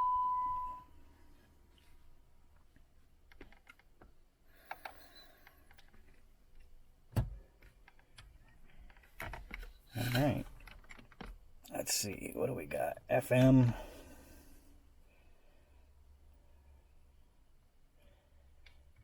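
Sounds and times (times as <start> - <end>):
steady high beep: 0.0 - 0.9.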